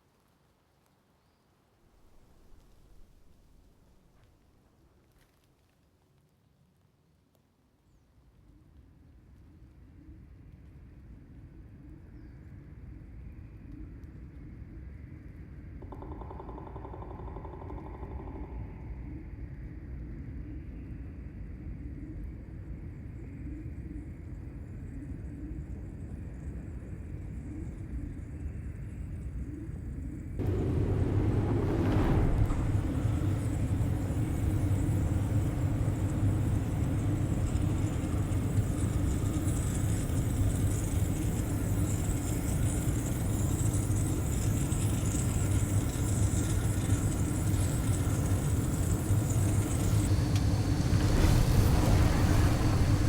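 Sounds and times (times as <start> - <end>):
vehicle rumbling: 30.4 - 42.1, 47.4 - 53.0
steady hum: 30.4 - 53.0.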